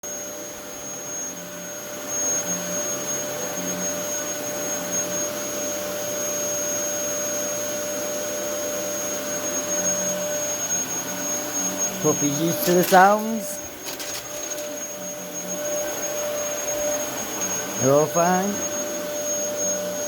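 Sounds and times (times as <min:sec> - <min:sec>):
motor running with high whine: 0:13.2 - 0:20.0.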